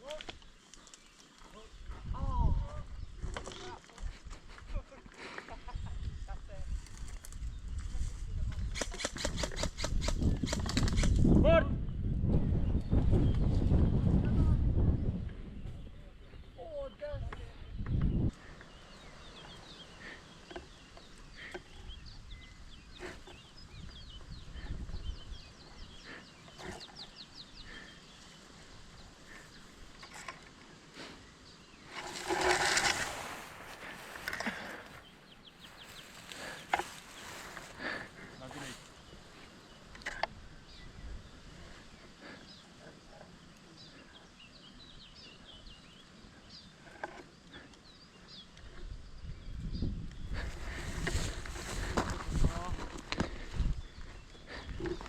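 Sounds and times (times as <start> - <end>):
birds chirping: 0.0 - 55.0
sharp clicks: 8.6 - 11.2.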